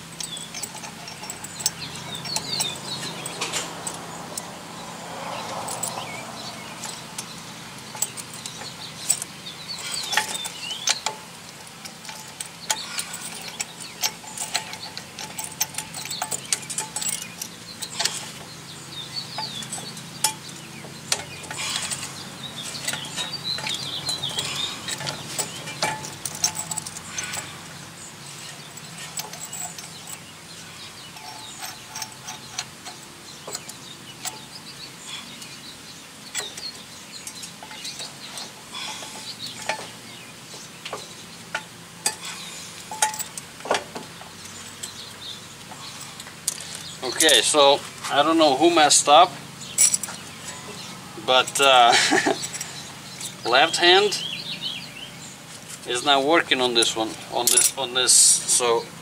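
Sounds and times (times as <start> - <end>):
metal tool clicking and ratcheting: 0.2 - 4.5, 6.8 - 18.3, 19.3 - 27.6, 28.6 - 30.3.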